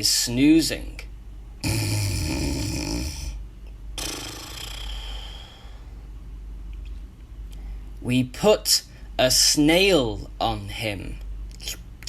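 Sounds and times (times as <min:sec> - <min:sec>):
buzzing snore: 0:01.6 - 0:03.4, 0:04.0 - 0:05.8
airy breath out: 0:04.0 - 0:06.0.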